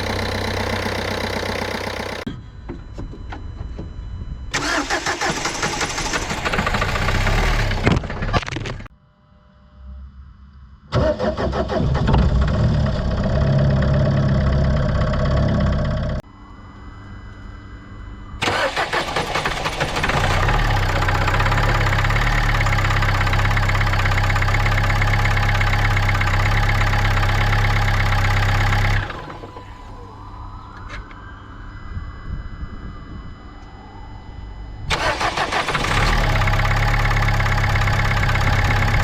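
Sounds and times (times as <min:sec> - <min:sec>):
car engine starting and running: 0:00.0 - 0:02.3, 0:04.5 - 0:08.9, 0:10.9 - 0:16.2, 0:18.4 - 0:30.3, 0:34.9 - 0:39.0.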